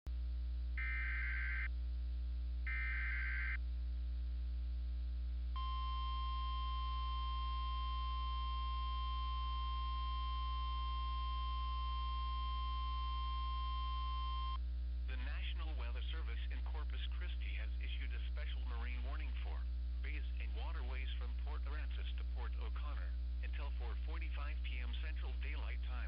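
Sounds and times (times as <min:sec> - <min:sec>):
constant low hum: 0:00.1 - 0:26.0
buzzing data bursts: 0:00.8 - 0:01.7, 0:02.7 - 0:03.6
steady warning alarm tone: 0:00.8 - 0:01.7, 0:02.7 - 0:03.6, 0:05.6 - 0:14.6.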